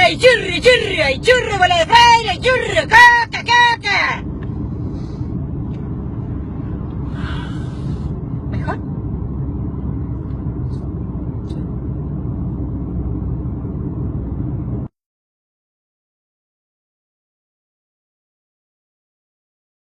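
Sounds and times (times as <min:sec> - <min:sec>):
low rumbling background noise: 0:00.0 - 0:14.9.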